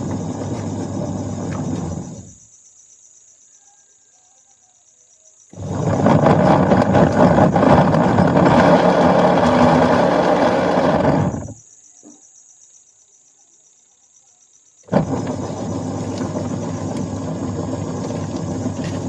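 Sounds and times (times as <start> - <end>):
washing machine rough rumbling: 0.0 - 2.3, 5.6 - 11.6, 14.9 - 19.0.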